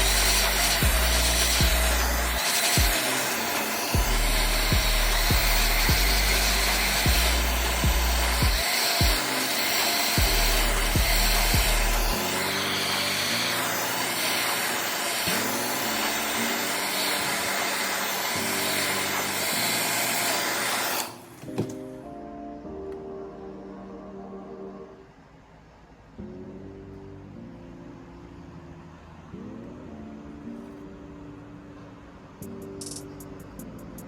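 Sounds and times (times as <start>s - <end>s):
small motor whirring: 0.0s - 21.3s
music with repeating bass line: 4.0s - 9.2s.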